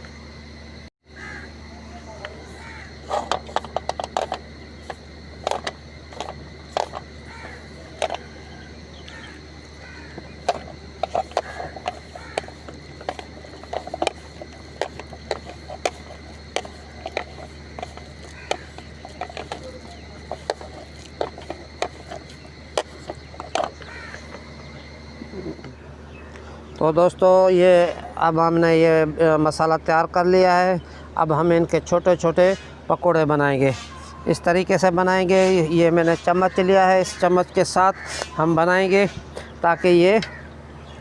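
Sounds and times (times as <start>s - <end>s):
batter mixing against bowl: 9.8s - 24.2s.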